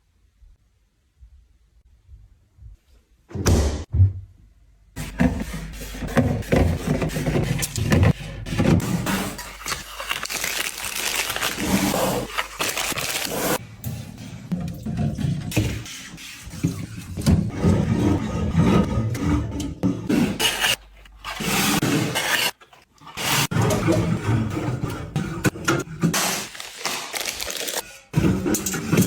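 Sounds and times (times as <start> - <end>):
packaging rubbing and scraping: 5.0 - 13.6, 26.0 - 28.3.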